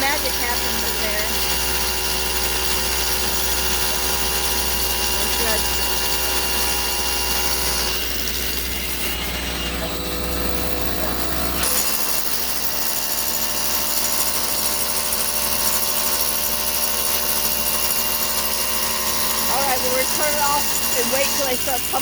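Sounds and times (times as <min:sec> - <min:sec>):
machine hum with whining tones: 0:00.1 - 0:12.0.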